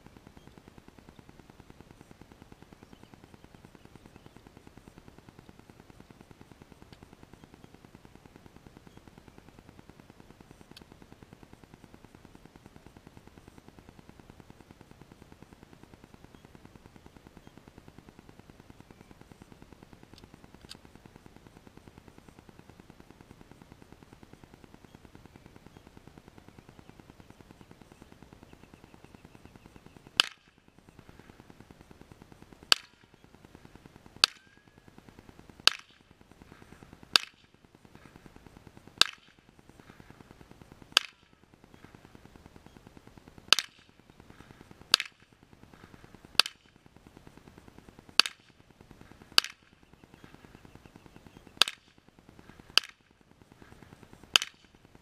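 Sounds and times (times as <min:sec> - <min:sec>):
rifle shots: 0:30.2 - 0:31.4, 0:35.6 - 0:42.2, 0:43.5 - 0:46.8, 0:51.6 - 0:54.8.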